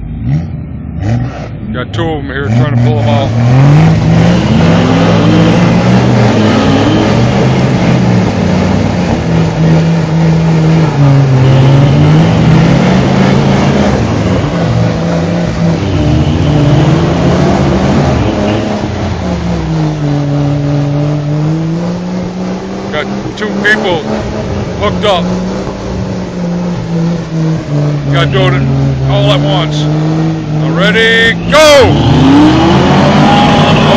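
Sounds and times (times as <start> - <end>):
vehicle engines revving: 0.0 - 33.9.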